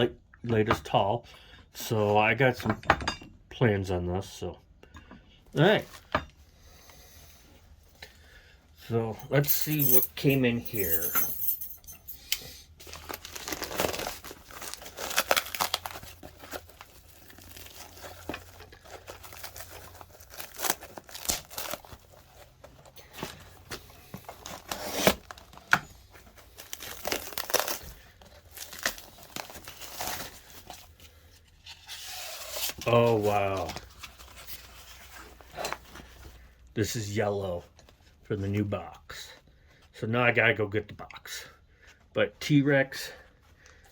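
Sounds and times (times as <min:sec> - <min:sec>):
packing material crinkling: 0:12.8 - 0:31.0
tape and cardboard tearing: 0:13.0 - 0:22.1, 0:24.3 - 0:25.7, 0:31.6 - 0:33.6.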